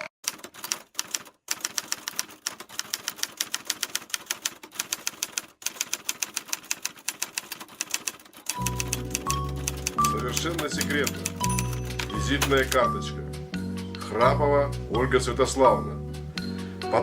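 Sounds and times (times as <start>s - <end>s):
typewriter keys clacking: 0.2s - 12.9s.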